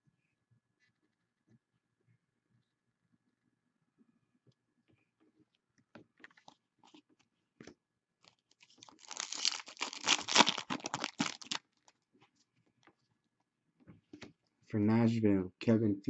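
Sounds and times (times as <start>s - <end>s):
packaging crinkling: 8.2s - 11.9s.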